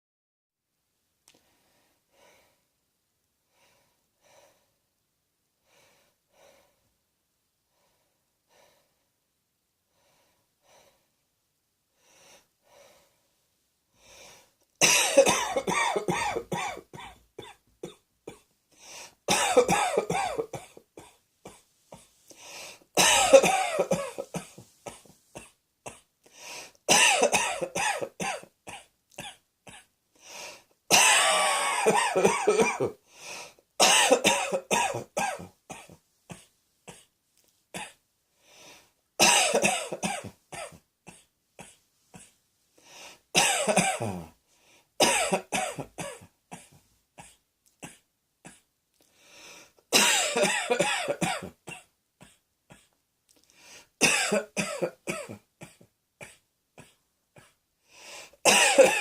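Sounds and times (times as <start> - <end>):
person coughing: 14.8 - 18.4, 19.3 - 22.1, 23.0 - 26.1, 26.9 - 29.9, 30.9 - 33.0, 33.8 - 37.1, 39.2 - 42.4, 43.4 - 44.4, 45.0 - 48.7, 49.9 - 53.0, 54.0 - 57.6, 58.4 - 59.0.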